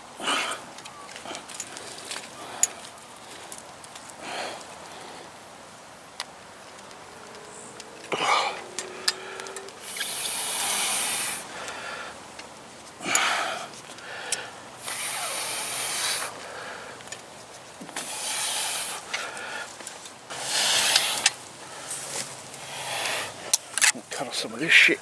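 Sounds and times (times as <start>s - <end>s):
man breathing hard: 0.2s - 3.4s, 4.2s - 5.4s, 8.1s - 12.3s, 13.0s - 17.1s, 18.0s - 23.6s
barbed wire clicking and scraping: 0.6s - 4.8s, 6.1s - 24.0s.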